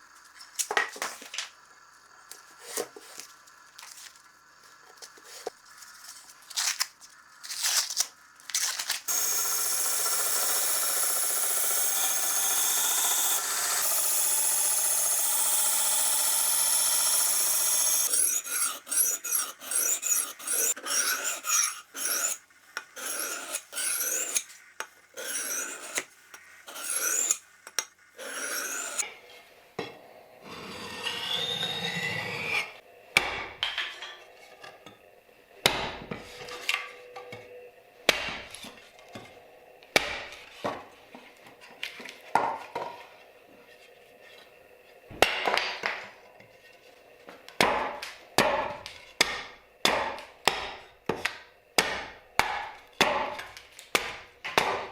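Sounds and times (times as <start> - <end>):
rasping strokes: 9.1 - 29.1.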